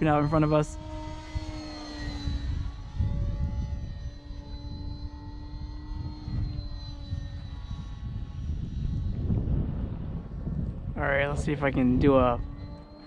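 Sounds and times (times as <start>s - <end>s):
model plane motor whine: 0.0s - 13.0s
wind rumble on microphone: 0.0s - 13.0s.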